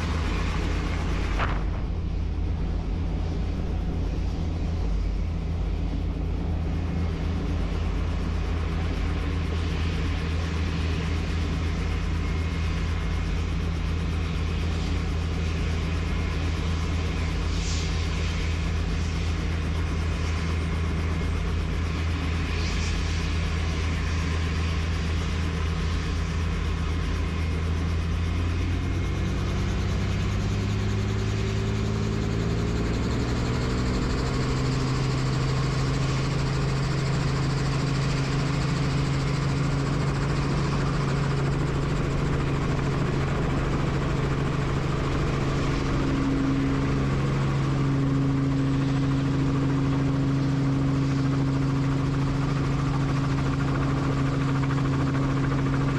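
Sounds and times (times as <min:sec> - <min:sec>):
helicopter engine and rotor: 0:00.0 - 0:55.9.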